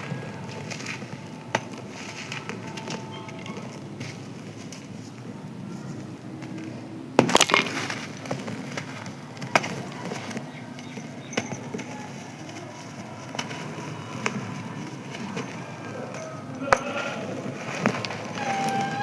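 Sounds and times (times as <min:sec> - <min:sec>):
cement pieces crunching by hand: 0:06.5 - 0:10.5.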